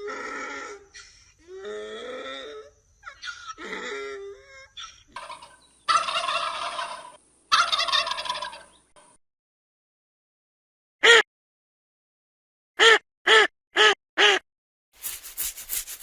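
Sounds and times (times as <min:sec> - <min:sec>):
poultry harsh loud calls: 0:05.2 - 0:08.8.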